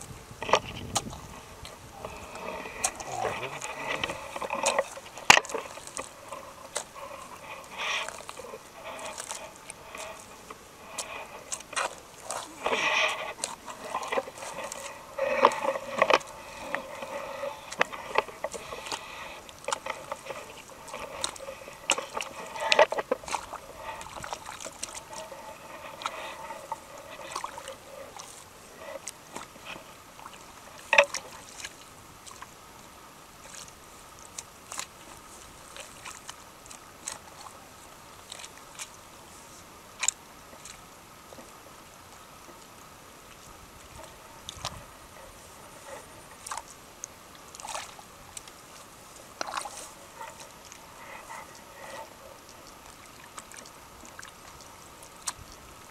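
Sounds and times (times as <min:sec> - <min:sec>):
splashing in shallow water: 0:00.0 - 0:55.9
faint voices: 0:01.8 - 0:21.8.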